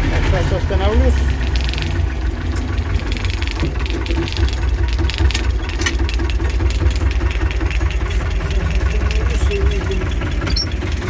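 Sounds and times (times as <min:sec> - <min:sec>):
tractor diesel engine idling: 0:00.0 - 0:11.0.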